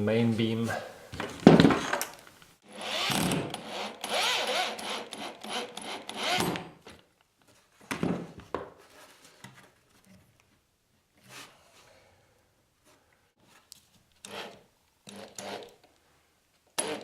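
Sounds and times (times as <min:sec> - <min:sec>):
power drill motor whining: 0:02.7 - 0:06.6.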